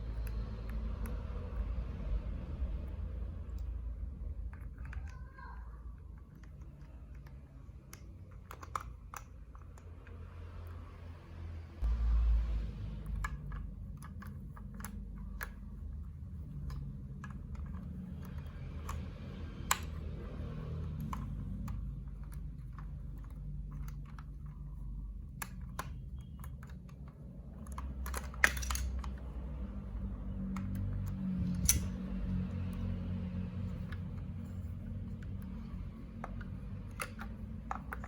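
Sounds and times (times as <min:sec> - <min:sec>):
steady low rumble: 0:00.0 - 0:08.2, 0:08.9 - 0:38.0
plastic blocks clicking: 0:05.9 - 0:10.2, 0:20.6 - 0:29.8, 0:33.8 - 0:38.0.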